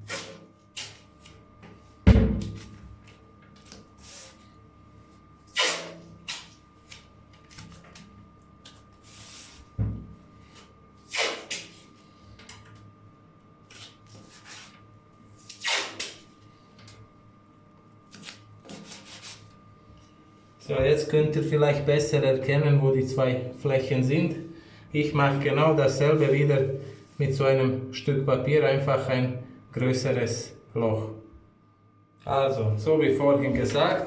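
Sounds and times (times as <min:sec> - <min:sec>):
knocks on bathtub: 0:02.1 - 0:02.5.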